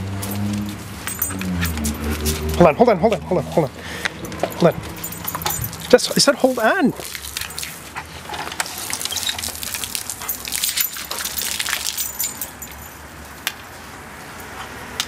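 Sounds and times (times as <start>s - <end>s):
garden hose spraying water: 4.9s - 12.6s.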